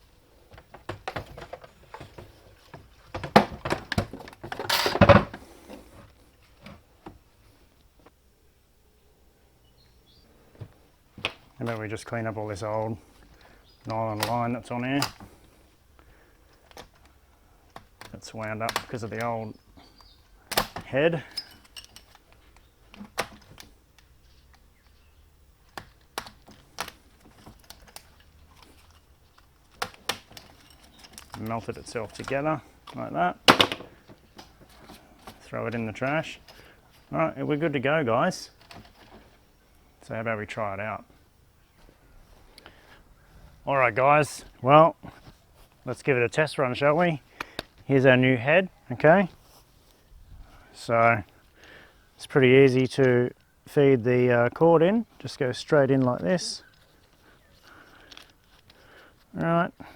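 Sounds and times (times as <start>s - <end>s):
knocks and clatters of handling: 0.4s - 7.3s, 10.5s - 37.2s, 38.5s - 39.5s, 54.5s - 59.9s.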